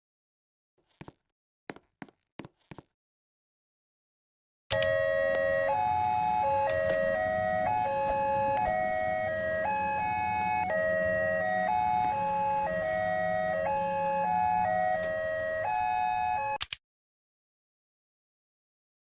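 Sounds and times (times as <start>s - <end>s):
level crossing warning siren: 4.7s - 16.6s.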